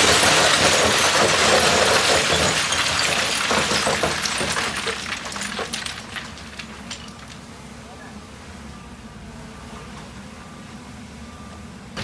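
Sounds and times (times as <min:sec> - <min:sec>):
gravel sliding and clattering: 0:00.0 - 0:07.5.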